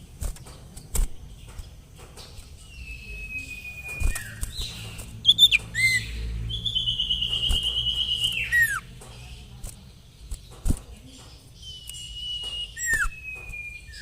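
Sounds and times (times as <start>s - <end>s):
bird calling with whistles and trills: 2.2s - 9.4s, 11.4s - 14.0s.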